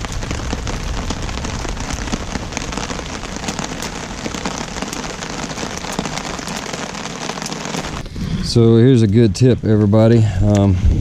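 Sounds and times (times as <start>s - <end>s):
rain falling: 0.0s - 10.8s.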